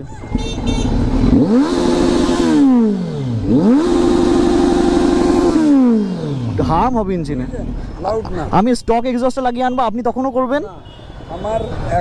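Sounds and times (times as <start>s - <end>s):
motorcycle engine revving: 0.0s - 8.2s.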